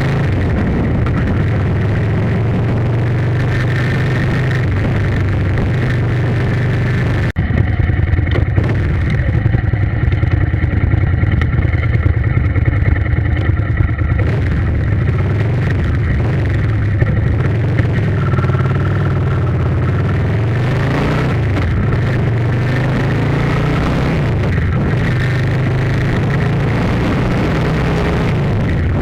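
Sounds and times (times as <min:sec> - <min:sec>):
low engine drone: 0:00.0 - 0:29.0.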